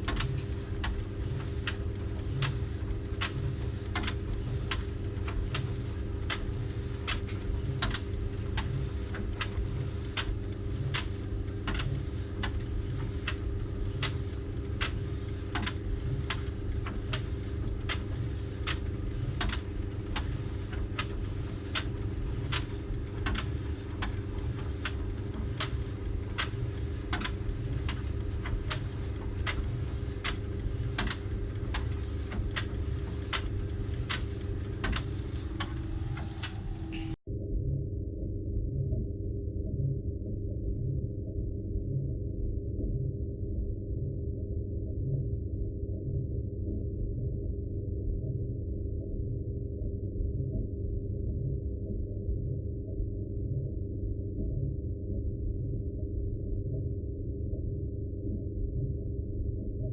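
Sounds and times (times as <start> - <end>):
sharp ticks: 0.0 - 37.2
low mechanical hum: 0.0 - 59.9.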